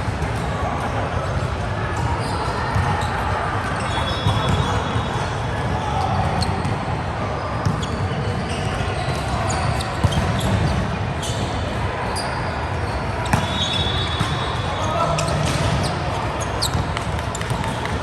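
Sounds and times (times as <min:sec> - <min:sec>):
voices in echoing hall: 0:00.0 - 0:18.0
volleyball hits and bounces: 0:09.1 - 0:10.9, 0:13.2 - 0:18.0.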